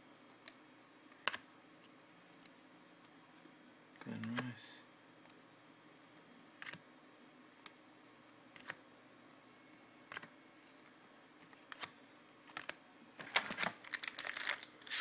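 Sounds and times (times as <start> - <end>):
cards sliding and clicking: 4.2 - 4.5, 6.6 - 6.8, 10.1 - 15.0.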